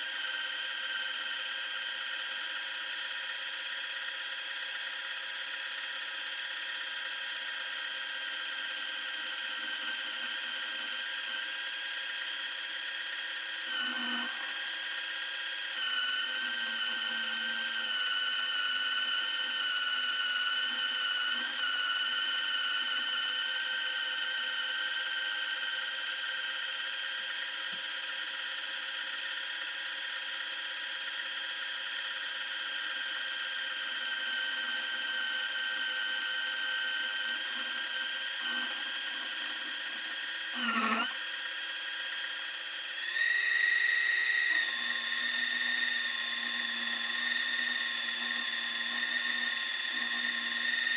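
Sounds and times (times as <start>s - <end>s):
lathe motor whining: 12.5s - 25.9s, 33.0s - 50.9s.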